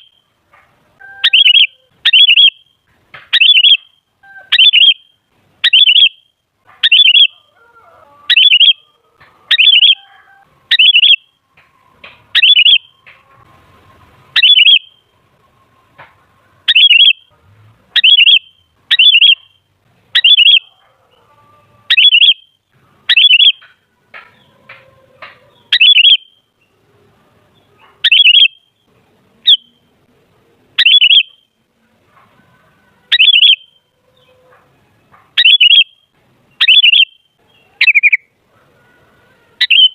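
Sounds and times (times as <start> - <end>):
bulbul giving loud calls: 1.0 - 2.7, 3.3 - 8.9, 9.5 - 11.3, 12.3 - 13.0, 14.4 - 15.0, 16.6 - 17.3, 17.9 - 20.8, 21.9 - 26.4, 27.8 - 28.6, 29.4 - 29.9, 30.8 - 31.5, 33.1 - 34.4, 35.2 - 36.0, 36.6 - 38.3, 39.6 - 39.9.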